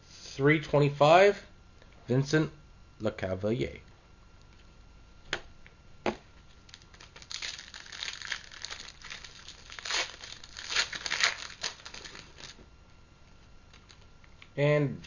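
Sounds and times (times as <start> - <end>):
wrapper tearing and crinkling: 6.5 - 12.6.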